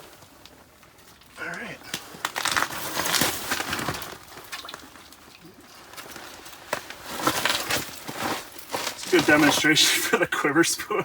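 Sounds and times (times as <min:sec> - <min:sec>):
rustling and scuffing: 0:05.9 - 0:09.9.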